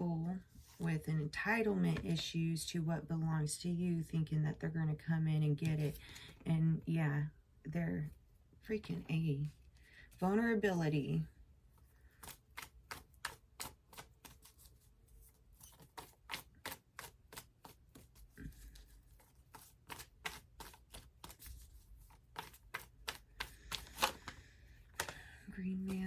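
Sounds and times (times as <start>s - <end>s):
cards being shuffled: 12.0s - 25.2s.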